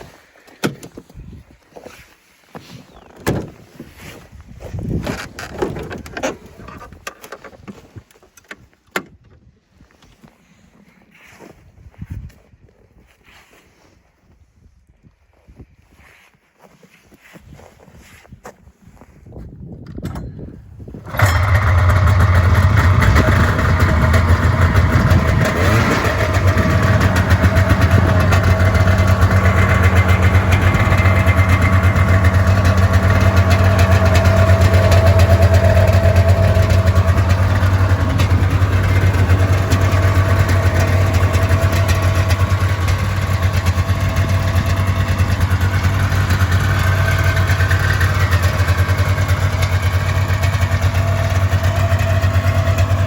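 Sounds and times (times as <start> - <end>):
snowmobile engine starting and idling: 2.9 - 8.7, 20.1 - 53.0.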